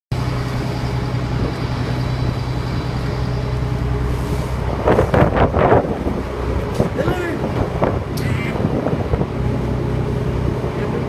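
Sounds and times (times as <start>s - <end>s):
low engine drone: 0.1s - 11.0s
person's voice: 7.0s - 7.4s.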